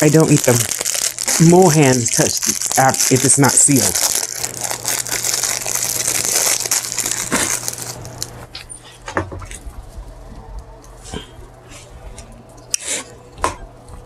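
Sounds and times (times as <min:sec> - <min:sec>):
packaging wrapper crinkling: 0:00.0 - 0:08.5.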